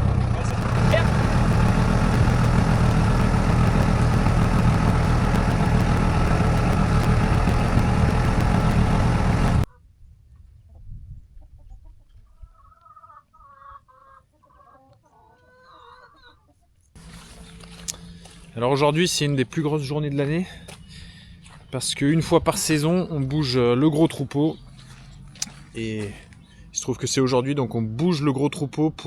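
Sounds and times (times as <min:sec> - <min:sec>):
engine running: 0:00.0 - 0:09.7, 0:17.0 - 0:26.9
hens clucking: 0:11.5 - 0:18.1, 0:22.5 - 0:26.5.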